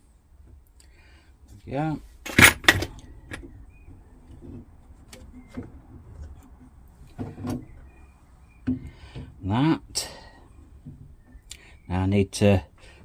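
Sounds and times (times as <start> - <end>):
metal parts and tools clicking: 2.2 - 3.5.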